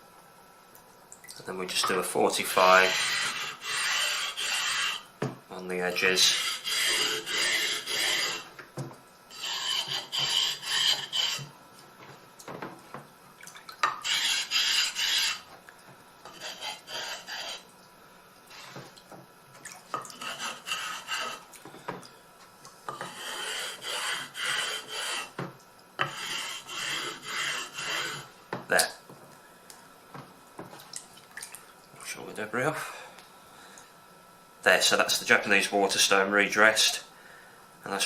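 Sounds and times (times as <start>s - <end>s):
stone scraping on stone: 2.5s - 5.0s, 6.2s - 8.5s, 9.3s - 11.5s, 13.8s - 15.5s, 16.2s - 17.6s, 19.9s - 21.5s, 22.9s - 25.4s, 26.0s - 28.3s.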